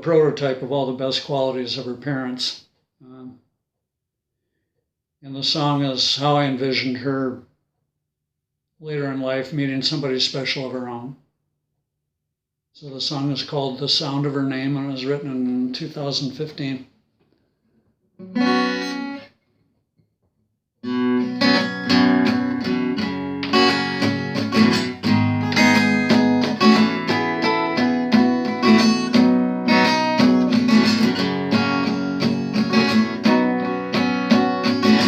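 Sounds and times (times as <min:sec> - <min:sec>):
acoustic guitar chords: 0:18.2 - 0:19.3, 0:20.8 - 0:35.0.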